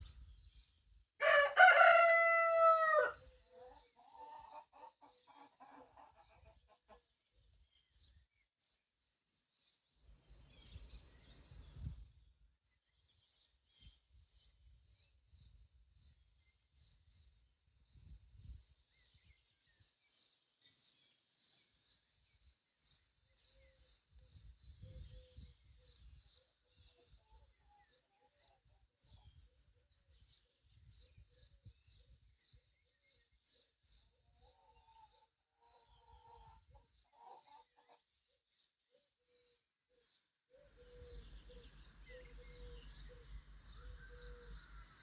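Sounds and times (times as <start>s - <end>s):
songbirds chirping: 0.0s - 45.0s
rooster crowing: 1.2s - 3.2s
chicken calls: 1.2s - 7.0s.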